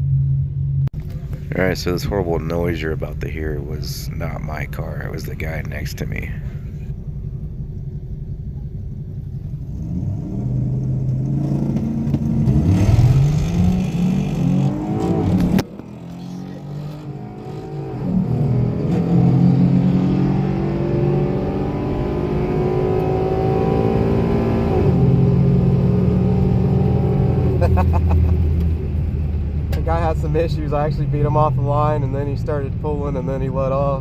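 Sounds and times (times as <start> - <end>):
car engine revving at full throttle: 9.6 - 33.7.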